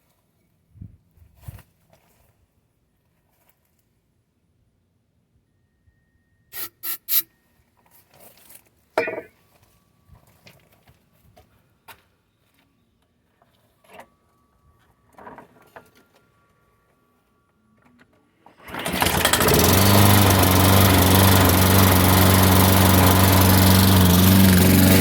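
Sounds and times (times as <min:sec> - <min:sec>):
lawn mower engine running: 0:09.0 - 0:09.3, 0:18.6 - 0:25.0.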